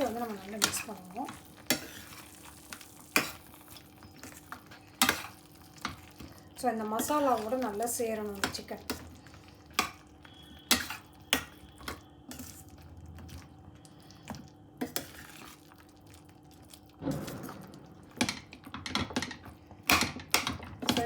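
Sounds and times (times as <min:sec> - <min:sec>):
spoon stirring thick sauce: 0:00.0 - 0:16.3.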